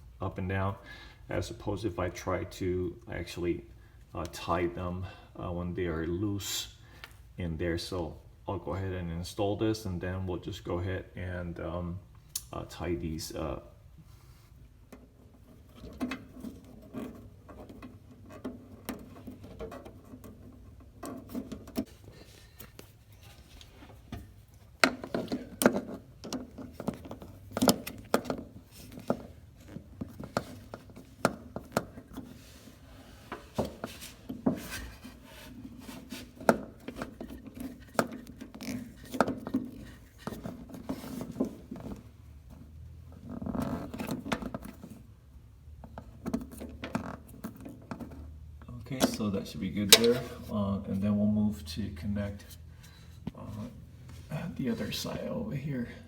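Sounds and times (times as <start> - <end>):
hose clamps clicking and tapping: 49.9 - 50.4.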